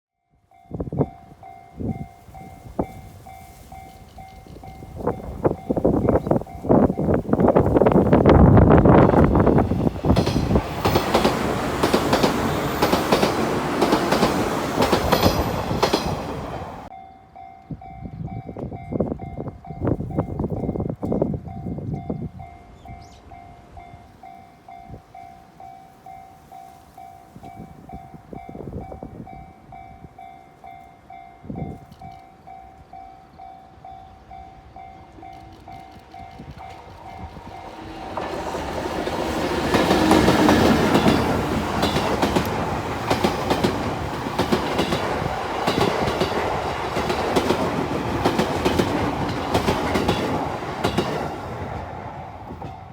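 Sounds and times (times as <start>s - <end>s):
level crossing warning bell ringing: 0.3s - 7.8s
electric train passing: 0.4s - 52.9s
wind buffeting microphone: 0.7s - 16.9s, 17.7s - 25.2s, 26.9s - 30.3s, 31.2s - 33.0s, 33.8s - 52.9s
train wheels clacking over rail joints: 7.2s - 16.9s, 35.2s - 51.8s.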